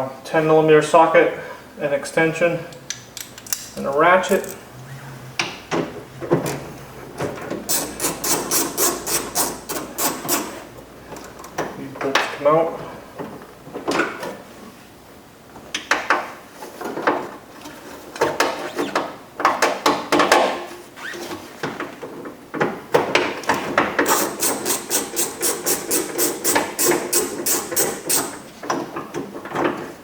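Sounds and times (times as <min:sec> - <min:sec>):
tools knocking and clicking: 0:02.7 - 0:04.6, 0:07.2 - 0:11.7, 0:22.6 - 0:29.8
ratchet clicks: 0:07.7 - 0:10.6, 0:24.0 - 0:28.5.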